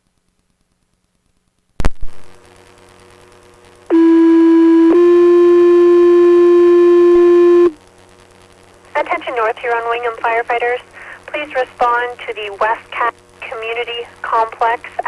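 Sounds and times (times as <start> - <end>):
radio click and crackle: 1.8 - 2.3
radio static hiss: 1.8 - 15.0
steady alert tones: 3.9 - 7.7.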